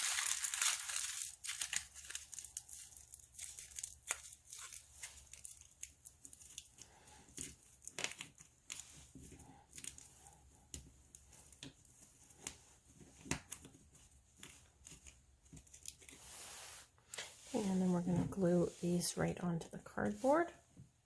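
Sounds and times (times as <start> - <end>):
tin foil crinkling: 0.0 - 9.0.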